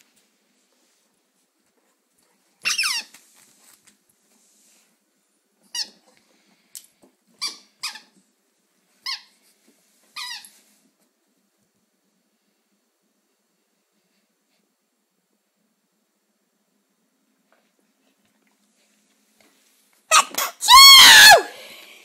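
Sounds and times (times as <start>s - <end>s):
squeaky dog toy squeaking: 2.6s - 3.1s, 7.4s - 8.2s, 9.0s - 9.3s, 10.2s - 10.6s.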